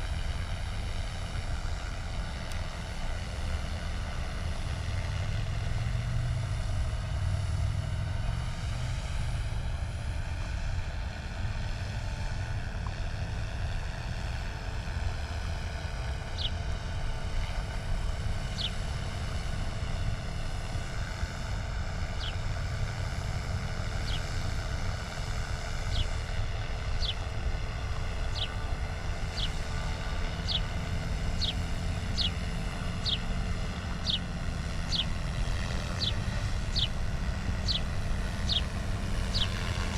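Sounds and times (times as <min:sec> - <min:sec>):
helicopter rumble and whine: 0:00.0 - 0:39.9.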